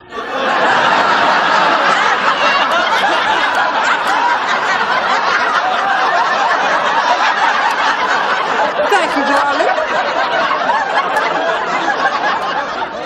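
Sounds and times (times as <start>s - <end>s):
studio audience laughing: 0.0s - 13.0s.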